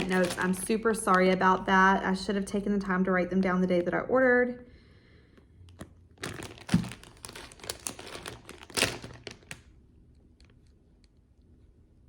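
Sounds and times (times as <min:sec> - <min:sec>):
packaging crinkling: 0:00.0 - 0:01.7, 0:05.7 - 0:09.8.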